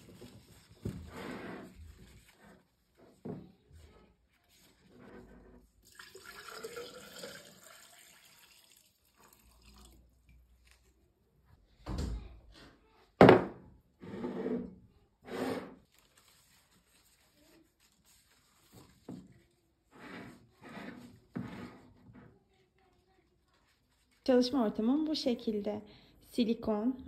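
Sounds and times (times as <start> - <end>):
water running: 5.8 - 10.8.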